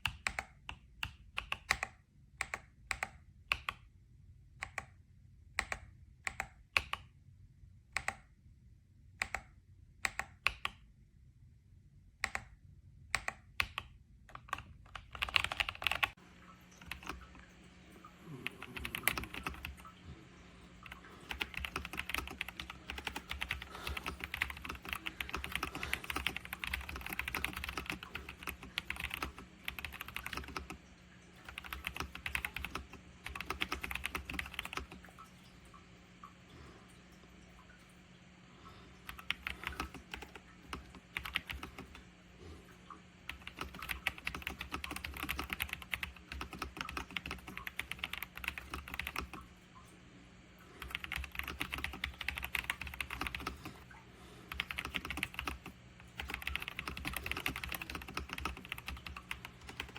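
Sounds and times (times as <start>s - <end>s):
mechanical keyboard typing: 13.2s - 16.2s, 16.8s - 17.2s, 18.3s - 20.0s, 20.8s - 35.1s, 39.1s - 42.1s, 43.3s - 49.5s, 50.7s - 53.9s, 54.5s - 59.9s.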